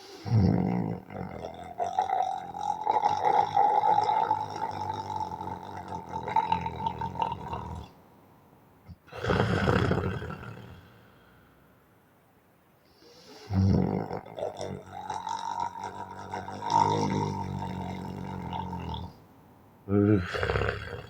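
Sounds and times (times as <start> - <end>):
man snoring: 0.0 - 7.8, 9.1 - 11.3, 13.3 - 19.2, 19.9 - 21.0.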